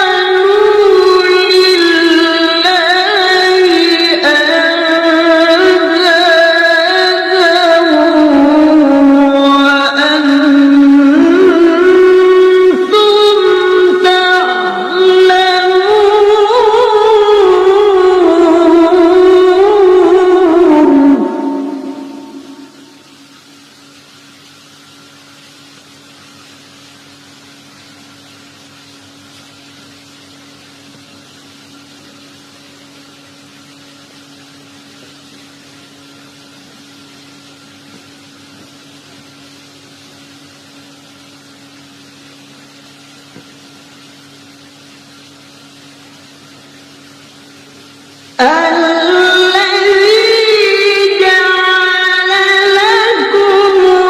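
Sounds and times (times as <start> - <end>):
steady tonal hum: 0.0 - 54.0.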